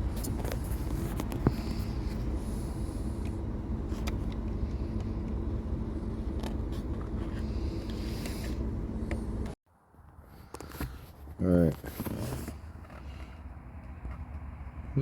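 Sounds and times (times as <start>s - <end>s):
low rumble in vehicle cab: 0.0s - 9.6s.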